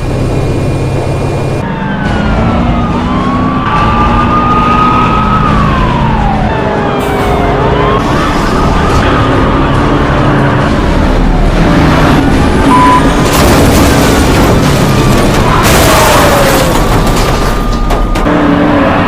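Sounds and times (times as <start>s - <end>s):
vehicle engine running: 0.0s - 5.4s
police siren wailing: 1.6s - 13.2s, 15.2s - 19.0s.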